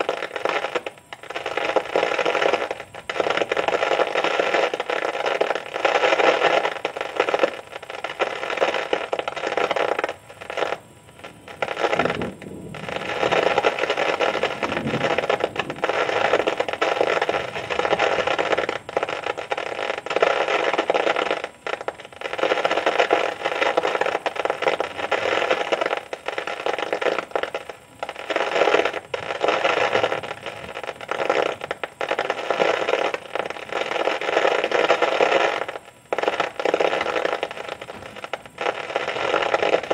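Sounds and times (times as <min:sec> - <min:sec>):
low rumble of thunder: 0:11.3 - 0:19.0, 0:29.0 - 0:31.2
heavy rain pouring: 0:14.2 - 0:16.5.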